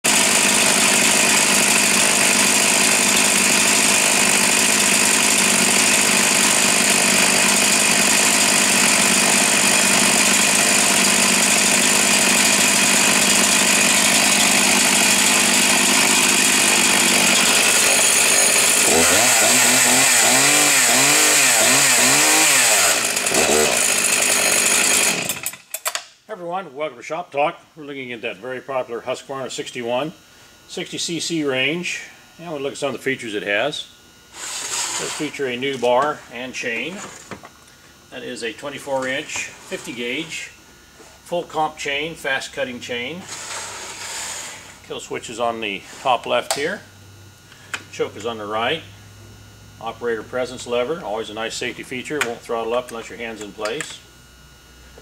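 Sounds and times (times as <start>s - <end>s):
chainsaw running at high revs: 0.0s - 25.7s, 34.2s - 37.1s, 38.2s - 40.6s.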